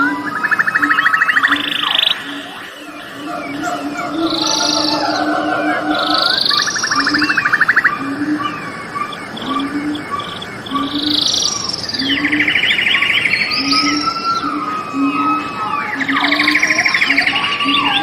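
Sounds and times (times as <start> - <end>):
birds chirping and singing: 0.0 - 18.0
bird rattling trills: 1.0 - 8.1.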